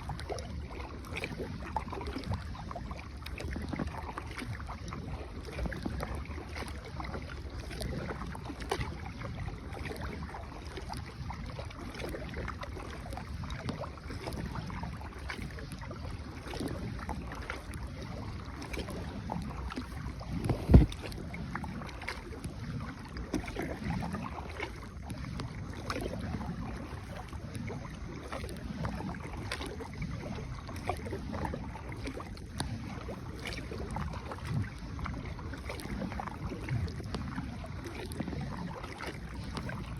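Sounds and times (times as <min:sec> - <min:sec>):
paddle strokes in water: 0:00.0 - 0:39.9
knocks on boat: 0:20.4 - 0:21.2.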